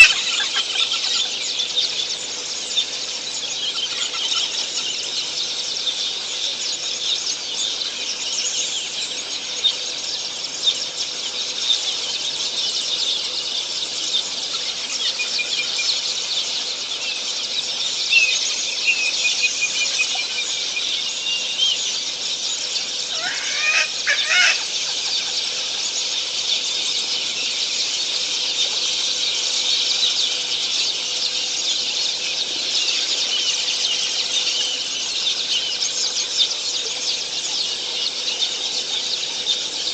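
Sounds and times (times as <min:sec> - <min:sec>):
birds chattering: 0:00.0 - 0:39.9
lower bird calls: 0:00.0 - 0:39.9
thin whistled bird call: 0:00.0 - 0:39.9.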